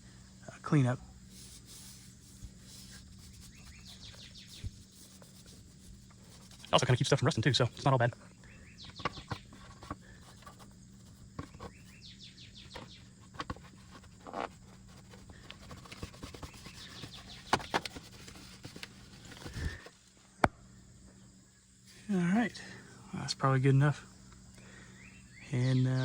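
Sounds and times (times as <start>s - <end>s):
birds chirping: 0.1s - 19.9s, 20.6s - 26.0s.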